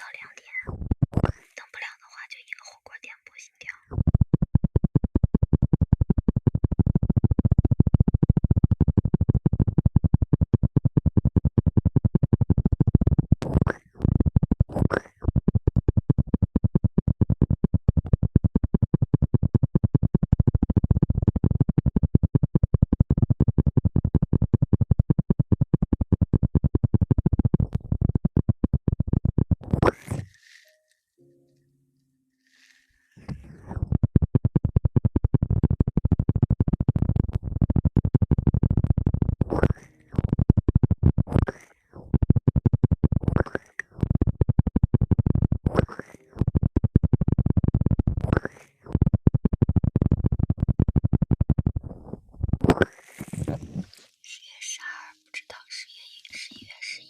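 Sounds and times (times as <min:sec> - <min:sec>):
scratching against microphone: 0:00.0 - 0:11.0, 0:11.9 - 0:16.4, 0:26.4 - 0:30.8, 0:32.4 - 0:57.0.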